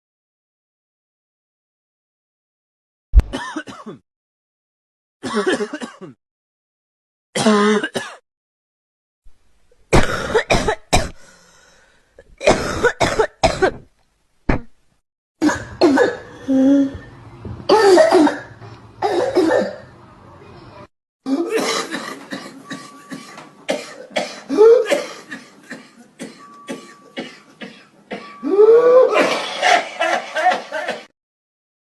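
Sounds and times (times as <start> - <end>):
person coughing: 3.2 - 4.0, 5.2 - 6.2, 7.4 - 8.2, 9.9 - 11.2, 12.4 - 13.9, 15.4 - 16.3, 17.7 - 19.8, 21.3 - 29.9.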